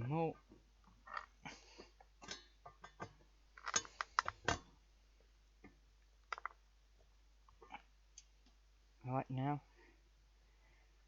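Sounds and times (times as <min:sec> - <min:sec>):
fan heater parts clicking: 0:02.2 - 0:04.7.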